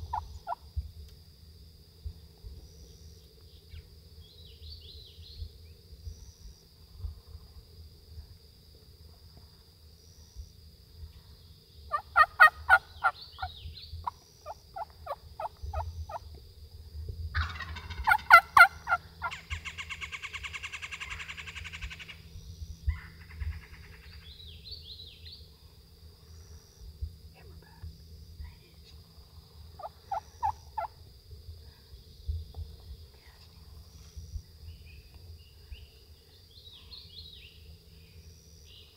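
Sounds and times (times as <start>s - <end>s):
turkey gobbling: 0.0s - 0.6s, 11.9s - 13.5s, 17.4s - 19.8s, 29.8s - 30.9s
turkey yelping: 0.0s - 0.6s, 11.9s - 13.5s, 17.4s - 19.6s, 29.8s - 30.9s.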